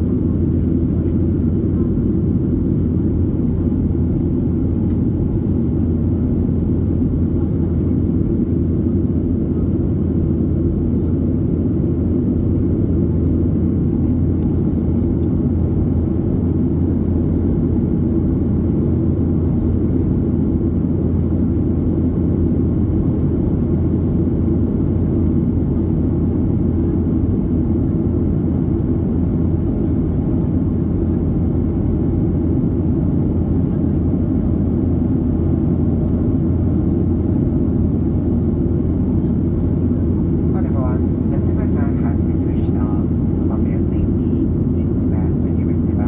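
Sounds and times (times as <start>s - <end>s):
jet engine drone: 0.0s - 46.0s
airflow over fuselage: 26.0s - 46.0s.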